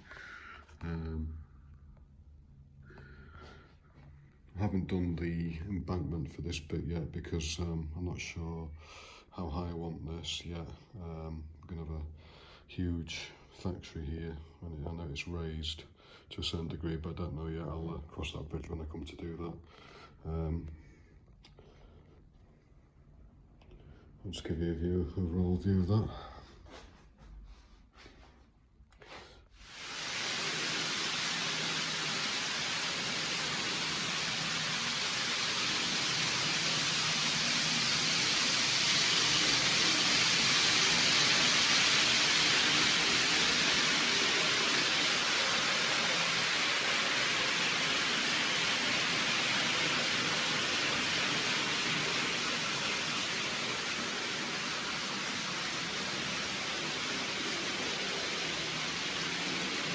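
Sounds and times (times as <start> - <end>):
steady hiss: 0.0 - 1.3, 29.6 - 59.9.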